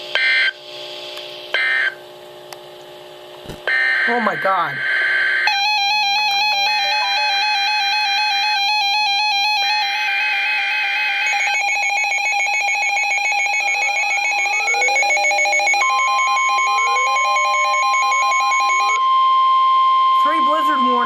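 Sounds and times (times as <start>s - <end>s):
steady alarm tone: 3.7s - 21.0s
rising electronic chirps: 13.7s - 21.0s
high beeps stepping between pitches: 13.9s - 19.2s.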